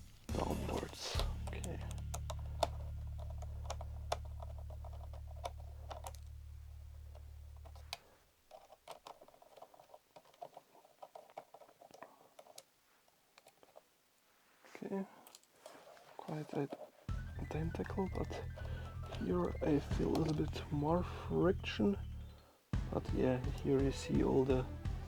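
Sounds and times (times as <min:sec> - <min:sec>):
low steady hum: 0:17.1 - 0:25.0.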